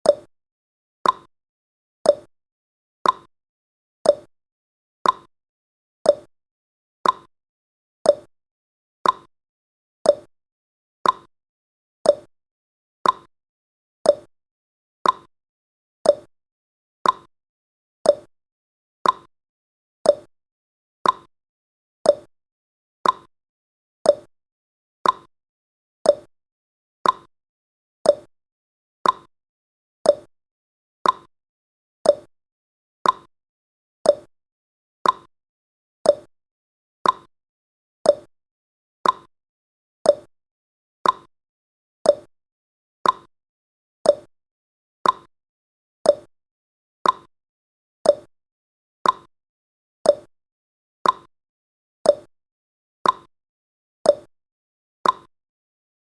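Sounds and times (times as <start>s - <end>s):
clock ticking: 37.0s - 37.3s, 39.0s - 39.3s, 43.0s - 43.3s, 45.0s - 45.3s, 47.0s - 47.3s, 49.0s - 49.3s, 51.0s - 51.3s, 55.0s - 55.3s.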